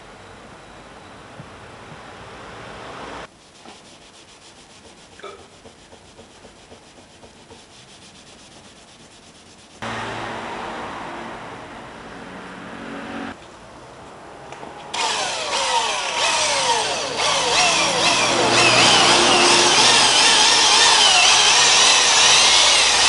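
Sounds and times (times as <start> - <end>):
light taps and rubbing: 4.6 - 9.5
power tool rushing noise: 14.9 - 23.0.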